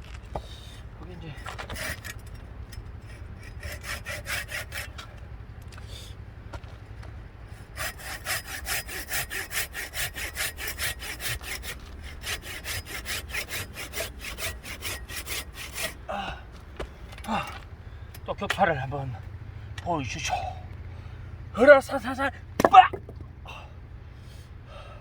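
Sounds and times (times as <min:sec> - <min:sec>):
hand saw cutting log: 0:01.1 - 0:05.2, 0:07.5 - 0:16.0, 0:22.1 - 0:23.2.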